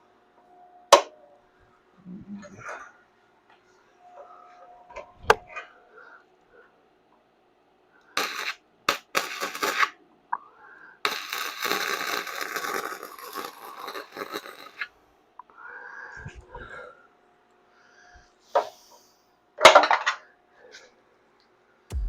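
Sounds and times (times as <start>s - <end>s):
welding arc crackling: 8.2s - 9.9s.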